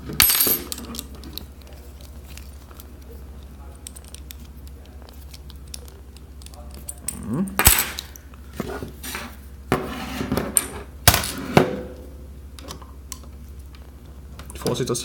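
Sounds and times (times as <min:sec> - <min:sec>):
metal gun parts clicking: 0:00.1 - 0:08.2.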